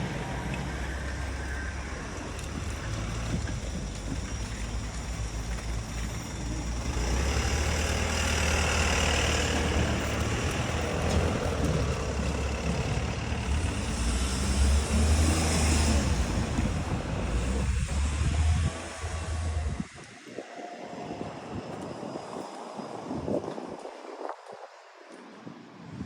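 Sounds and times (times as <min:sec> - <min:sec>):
heavy vehicle passing: 0:00.0 - 0:20.1.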